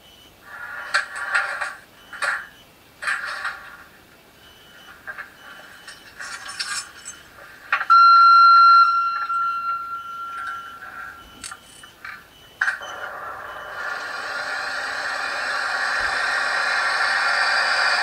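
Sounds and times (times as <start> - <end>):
loud high steady tone: 7.9 - 11.3, 12.9 - 18.0.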